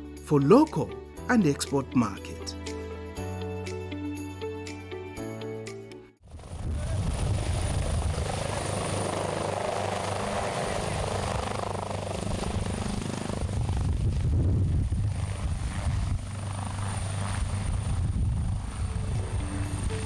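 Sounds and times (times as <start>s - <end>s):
helicopter rotor drone: 6.3s - 20.0s.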